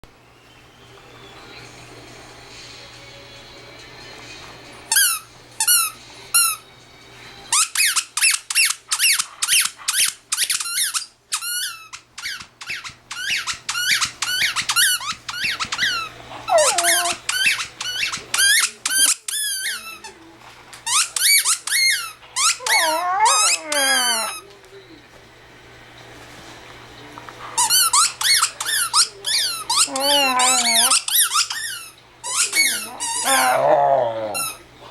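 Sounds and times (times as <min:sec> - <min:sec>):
squeaky dog toy squeaking: 0:07.5 - 0:20.0, 0:20.9 - 0:24.4, 0:27.6 - 0:33.6.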